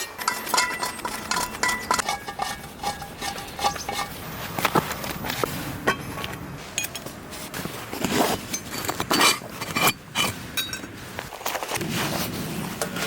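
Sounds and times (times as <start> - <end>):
metal cookware clinking: 0.0 - 4.1.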